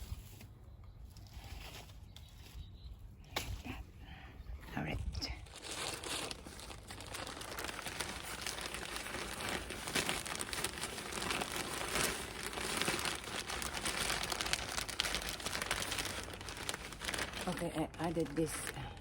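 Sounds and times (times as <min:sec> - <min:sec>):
plastic bag crinkling: 0:05.4 - 0:19.0.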